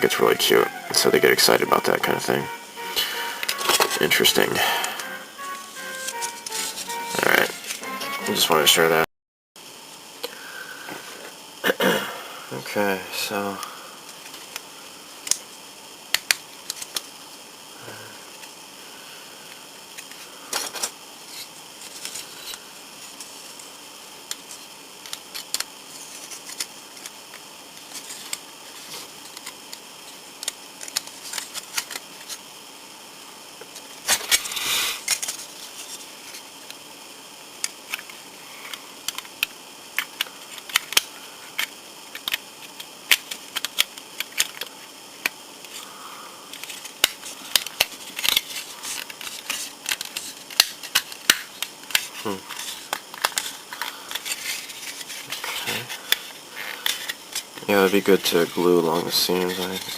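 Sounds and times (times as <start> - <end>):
plastic parts clicking: 25.0 - 25.7, 30.4 - 32.4, 39.1 - 41.0, 41.6 - 44.7, 46.5 - 57.4.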